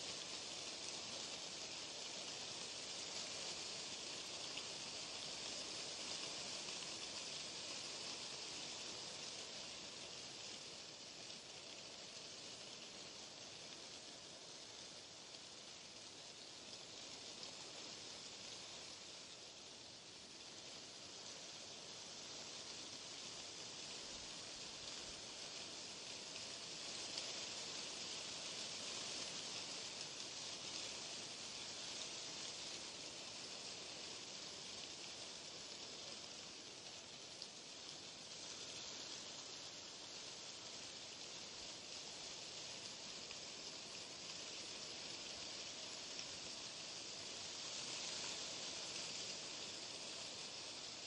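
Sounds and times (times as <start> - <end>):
white noise hiss: 0.0 - 51.0.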